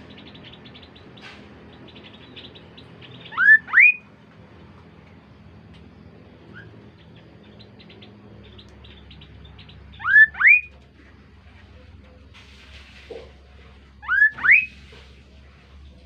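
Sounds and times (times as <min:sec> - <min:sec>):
soft high bird chirps: 0:00.0 - 0:04.1, 0:06.4 - 0:10.8, 0:14.0 - 0:14.8
bird whistled rising notes: 0:03.2 - 0:04.0, 0:09.9 - 0:10.7, 0:14.0 - 0:14.7.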